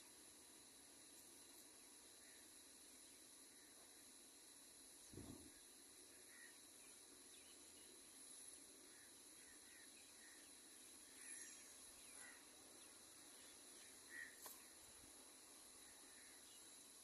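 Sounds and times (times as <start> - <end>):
faint bird chirps: 0.0 - 17.0.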